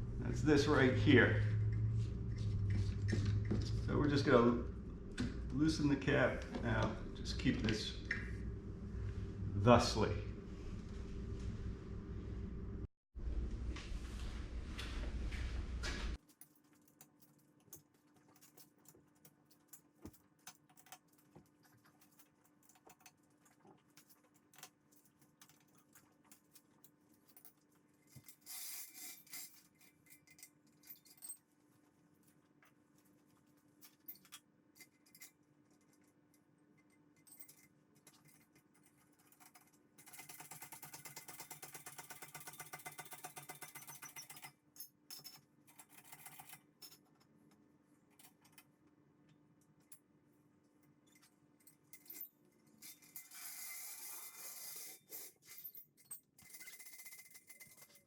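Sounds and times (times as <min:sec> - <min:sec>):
rapid mechanical ratcheting: 0:39.4 - 0:44.5.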